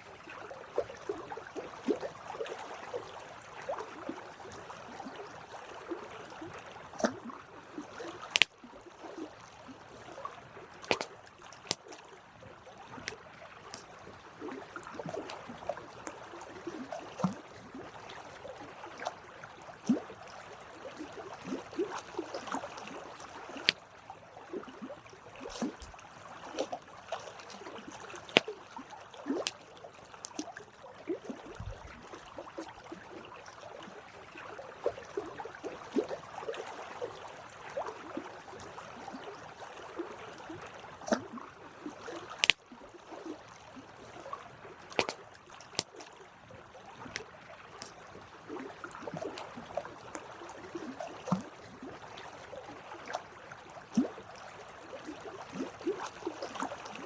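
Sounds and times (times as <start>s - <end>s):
campfire crackling and popping: 8.3s - 8.5s, 42.4s - 42.6s.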